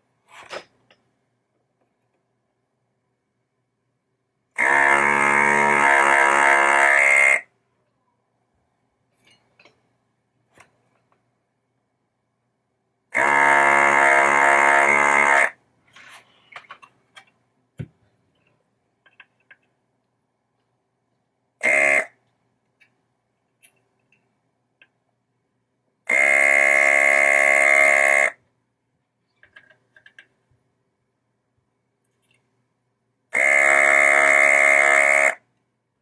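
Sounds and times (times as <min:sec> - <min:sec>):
desoldering pump buzzing: 0:13.2 - 0:15.5, 0:33.4 - 0:35.4.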